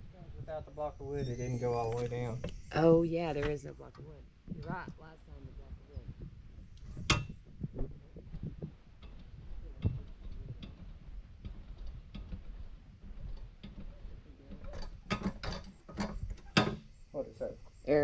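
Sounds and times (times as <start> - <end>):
handling clicks and knocks: 6.0 - 16.9.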